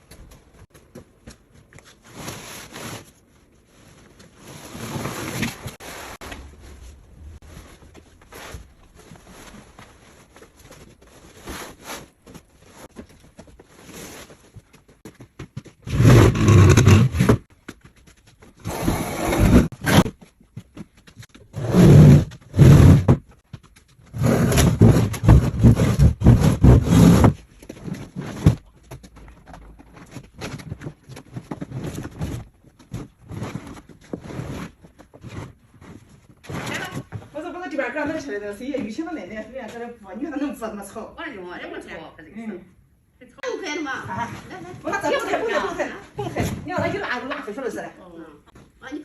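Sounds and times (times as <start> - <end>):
wet vinyl scraping and rustling: 1.7 - 14.7.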